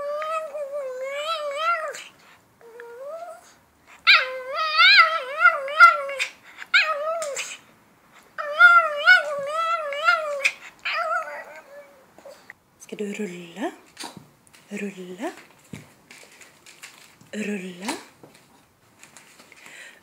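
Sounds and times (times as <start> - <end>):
dog whining and yowling: 0.0 - 7.7, 8.3 - 12.5.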